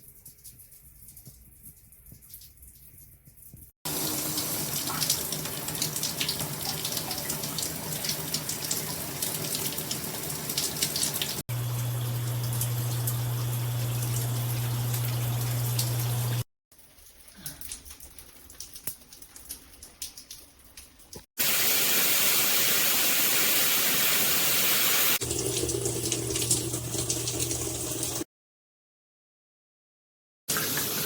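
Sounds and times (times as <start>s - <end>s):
shower spray hissing: 21.4s - 25.2s.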